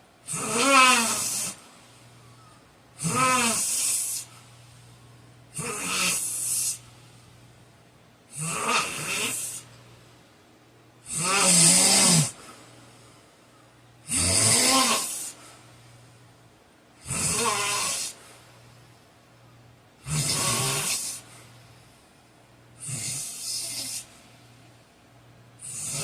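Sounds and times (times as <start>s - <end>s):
man snoring: 0.2s - 1.6s, 3.0s - 4.3s, 5.5s - 6.8s, 8.3s - 9.7s, 11.0s - 12.4s, 14.0s - 15.4s, 17.0s - 18.2s, 20.0s - 21.3s, 22.8s - 24.1s, 25.6s - 26.0s.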